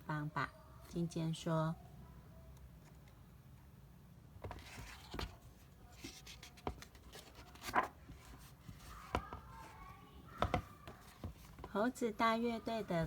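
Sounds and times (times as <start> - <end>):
paper page rustling: 4.5 - 9.7.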